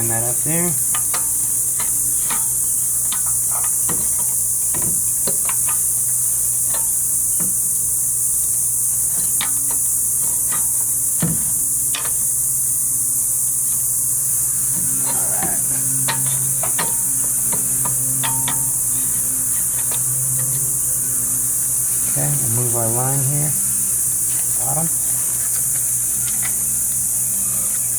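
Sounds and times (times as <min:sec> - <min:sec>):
steady high hiss: 0:00.0 - 0:27.9
low hum: 0:14.2 - 0:27.9.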